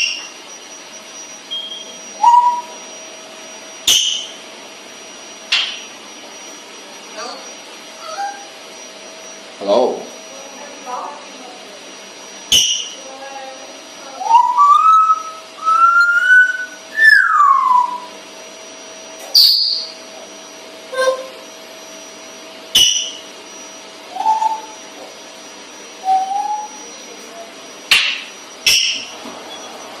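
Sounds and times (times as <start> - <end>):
parrot whistling: 0.0 - 0.3, 1.5 - 2.8, 3.8 - 4.4, 8.0 - 8.6, 12.5 - 13.0, 14.2 - 18.1, 19.3 - 20.0, 22.7 - 23.2, 24.1 - 24.8, 26.0 - 26.8.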